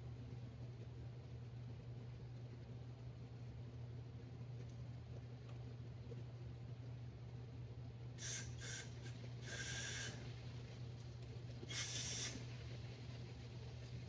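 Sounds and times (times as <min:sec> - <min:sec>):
aerosol spray hissing: 0:08.2 - 0:10.2, 0:11.7 - 0:12.5.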